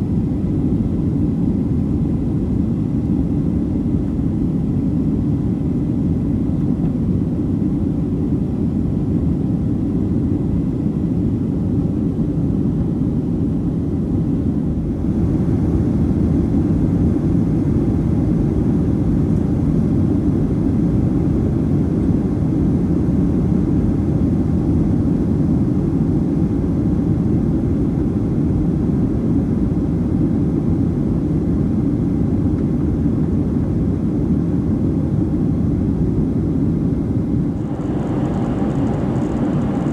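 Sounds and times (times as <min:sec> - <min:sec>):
jet engine cabin rush: 0:36.8 - 0:39.9.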